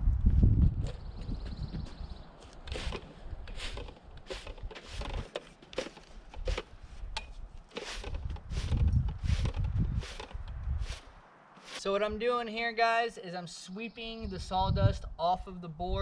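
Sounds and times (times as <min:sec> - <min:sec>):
broom sweeping wooden boards: 0:02.7 - 0:07.1, 0:07.7 - 0:11.9.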